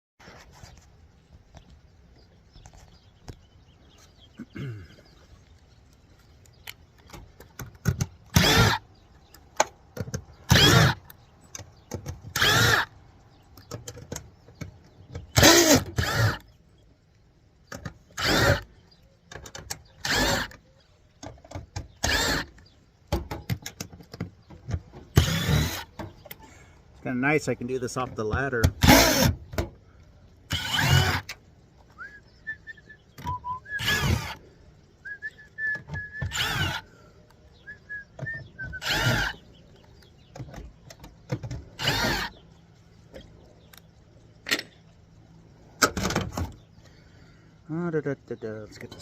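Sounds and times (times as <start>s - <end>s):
cordless drill bursts: 8.3s - 8.8s, 10.5s - 11.0s, 12.3s - 13.0s, 15.3s - 16.4s, 18.2s - 18.7s, 20.0s - 20.6s, 22.0s - 22.6s, 25.2s - 26.0s, 28.7s - 29.4s, 30.5s - 31.3s, 33.8s - 34.4s, 36.2s - 36.9s, 38.8s - 39.4s, 41.8s - 42.4s.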